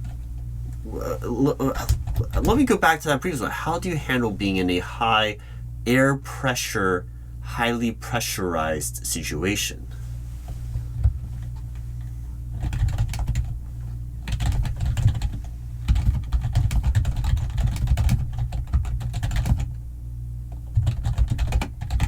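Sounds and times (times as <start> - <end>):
steady low hum: 0.0 - 22.0
computer keyboard typing: 12.6 - 13.5, 14.2 - 19.7, 20.7 - 22.0.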